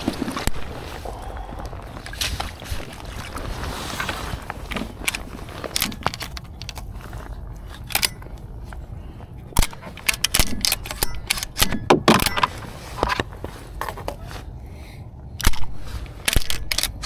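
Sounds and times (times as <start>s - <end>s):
hard gear clicking and knocking: 7.8s - 8.4s, 9.6s - 12.6s, 15.4s - 17.0s.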